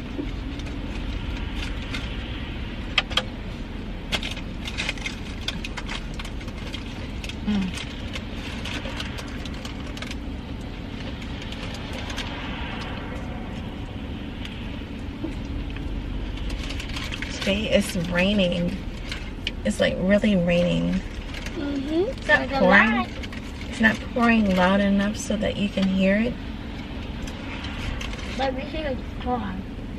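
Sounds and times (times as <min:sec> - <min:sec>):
steady low hum: 0:00.0 - 0:29.9
packaging crackling: 0:04.1 - 0:13.0.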